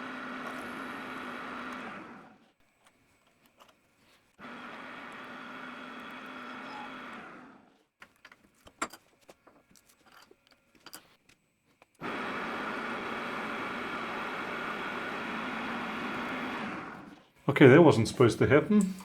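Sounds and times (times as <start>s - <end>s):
lathe running: 0.0s - 2.3s, 12.0s - 19.0s.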